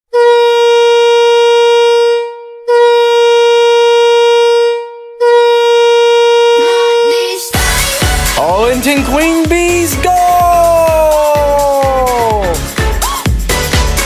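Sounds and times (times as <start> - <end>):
arena goal horn blasts: 0.1 - 7.3.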